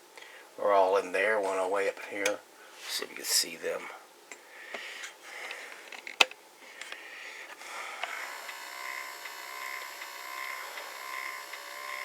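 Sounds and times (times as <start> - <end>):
electric motor buzzing: 7.5 - 12.0.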